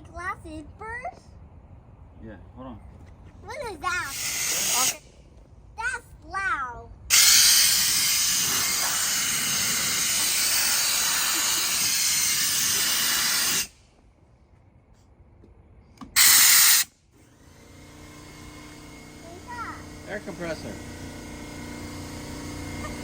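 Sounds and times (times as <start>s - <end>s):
compressed air hissing: 4.0s - 5.1s, 7.1s - 13.8s, 16.1s - 23.0s.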